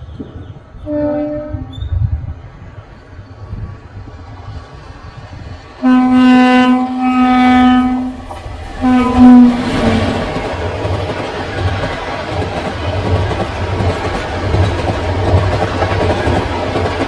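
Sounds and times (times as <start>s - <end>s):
train rumbling past: 0.0s - 17.0s
locomotive horn blasts: 0.8s - 1.9s, 5.8s - 10.3s.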